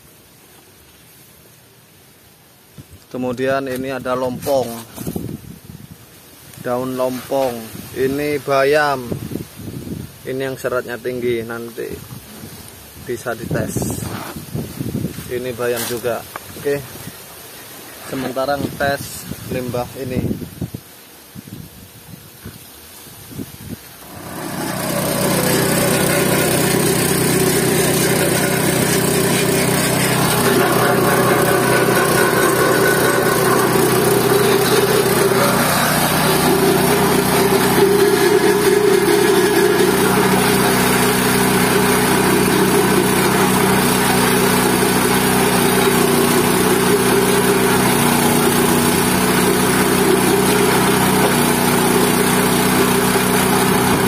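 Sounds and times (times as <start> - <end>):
waste pulverizer running: 24.0 - 54.0.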